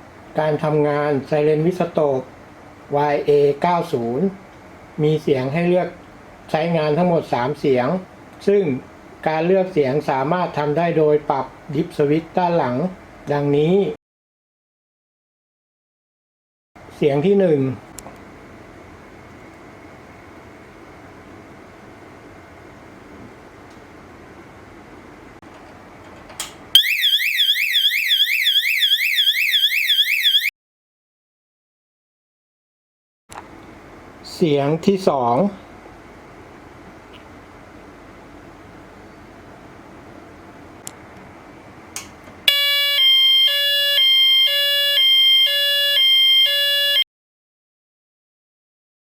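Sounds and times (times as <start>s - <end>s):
electronic whooping siren: 26.8s - 30.5s, 42.5s - 47.0s.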